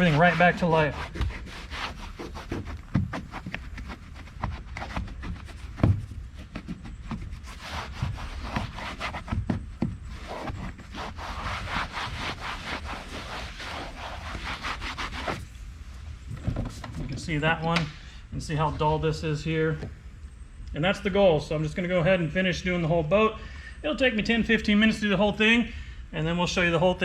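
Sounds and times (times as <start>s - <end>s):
towel wiping plastic: 0.0s - 15.5s.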